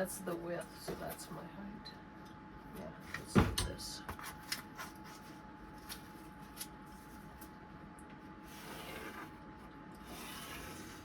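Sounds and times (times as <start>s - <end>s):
faint high hum: 0.0s - 11.0s.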